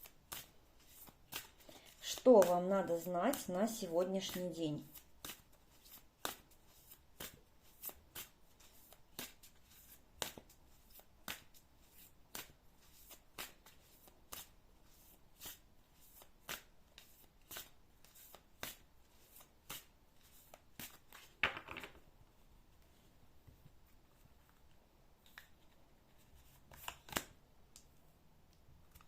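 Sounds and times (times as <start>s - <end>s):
cards being shuffled: 0.0s - 22.0s, 23.9s - 27.9s.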